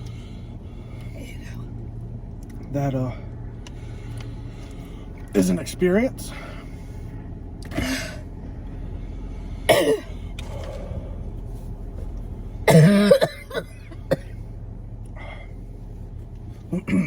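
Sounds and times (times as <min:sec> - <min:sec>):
person coughing hard: 0:09.7 - 0:10.1, 0:12.7 - 0:14.3.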